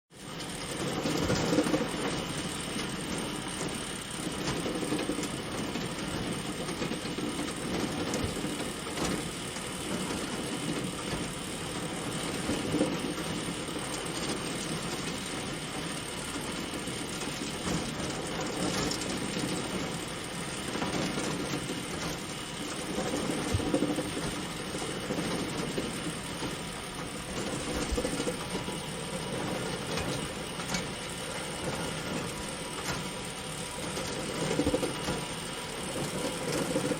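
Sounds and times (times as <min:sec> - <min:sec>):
chain conveyor clattering: 0:09.9 - 0:36.9.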